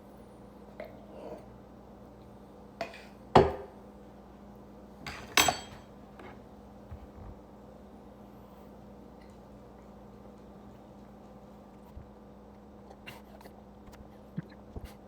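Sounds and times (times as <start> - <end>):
utensil clinking against dishes: 5.0 - 6.4.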